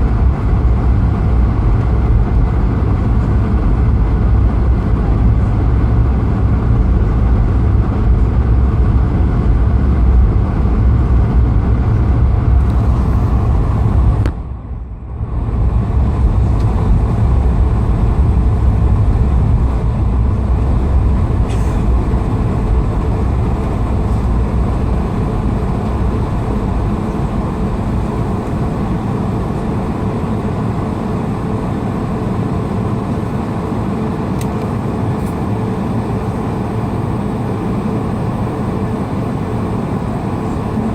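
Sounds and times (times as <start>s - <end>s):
airflow: 0.0s - 31.6s
jet engine rumble in cabin: 0.0s - 40.9s.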